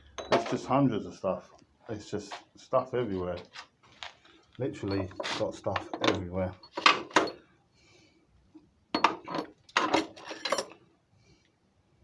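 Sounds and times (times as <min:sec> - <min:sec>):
metal tools clattering and clinking: 0:00.0 - 0:00.7, 0:04.7 - 0:07.4, 0:09.0 - 0:10.8.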